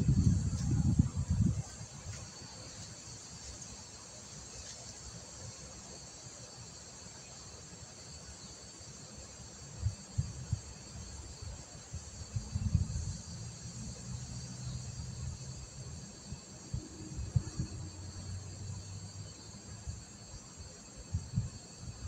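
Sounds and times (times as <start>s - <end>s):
low thumps and rumbles: 0.0s - 1.7s
high-pitched insect chorus: 0.0s - 22.0s.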